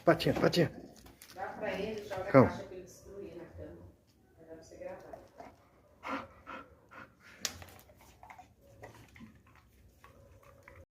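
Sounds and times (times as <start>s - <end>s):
dog panting: 5.0s - 10.8s.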